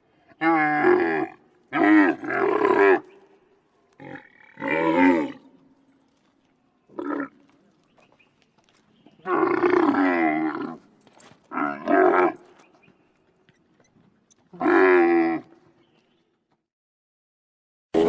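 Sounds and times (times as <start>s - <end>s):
camel calling: 0.4s - 3.3s, 3.9s - 5.7s, 6.9s - 7.6s, 9.0s - 16.2s.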